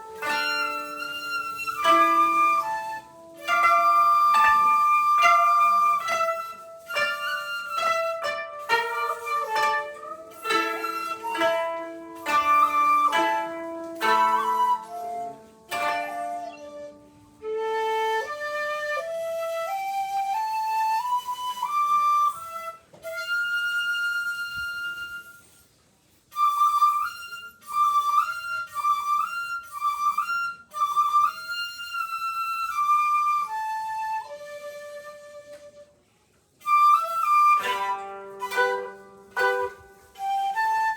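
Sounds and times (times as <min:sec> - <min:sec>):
plucked koto notes: 0:00.0 - 0:17.2, 0:37.5 - 0:40.8
shakuhachi flute playing: 0:00.0 - 0:40.9.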